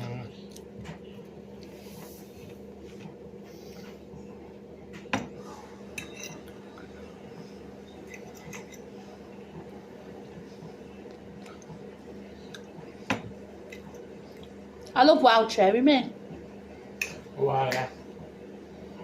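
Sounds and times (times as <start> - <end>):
cutlery and crockery clinking: 6.0 - 6.5, 8.0 - 8.9.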